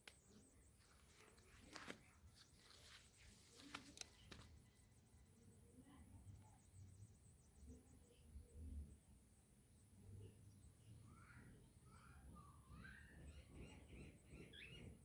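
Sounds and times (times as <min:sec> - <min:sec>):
faint clicks: 0:00.0 - 0:04.6
soft rustles: 0:00.0 - 0:04.8.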